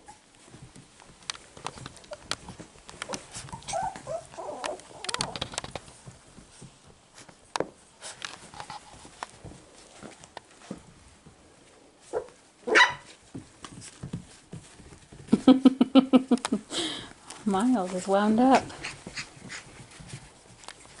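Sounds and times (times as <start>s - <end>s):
puppies scuffling: 0.0s - 21.0s
puppy whimpers: 3.4s - 5.5s.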